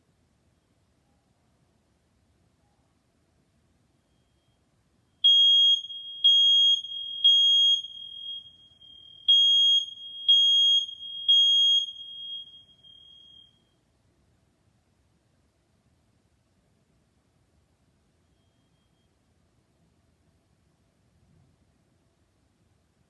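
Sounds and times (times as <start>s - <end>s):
smoke alarm high beeps: 4.0s - 4.6s, 5.2s - 13.7s, 18.3s - 19.2s.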